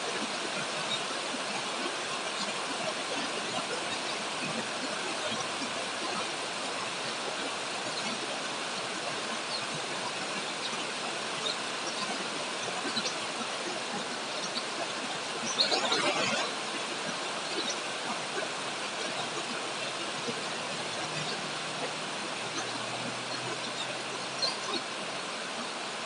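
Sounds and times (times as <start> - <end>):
heavy rain on leaves: 16.7 - 26.0.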